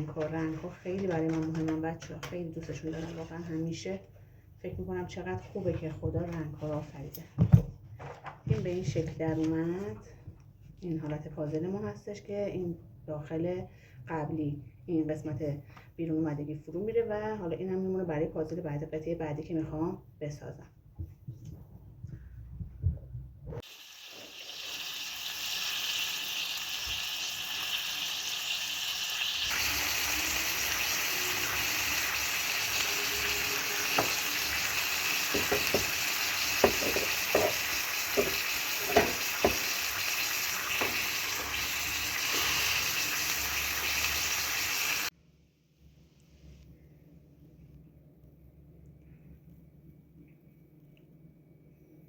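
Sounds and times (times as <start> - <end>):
food sizzling in a pan: 23.6 - 45.1.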